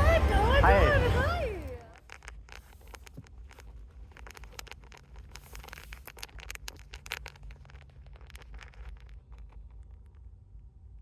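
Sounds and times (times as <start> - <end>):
rustling and scraping of handling: 1.7 - 10.7.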